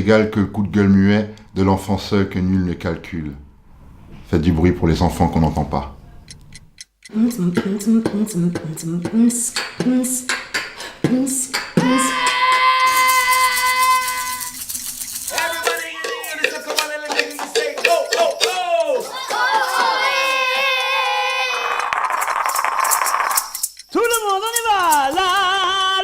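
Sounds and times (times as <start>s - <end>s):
vocal clicks and knocks: 6.2s - 13.0s, 15.3s - 25.3s
held vocal note: 7.1s - 14.6s, 15.3s - 22.0s
sliding vocal notes: 7.1s - 14.6s, 15.3s - 26.0s.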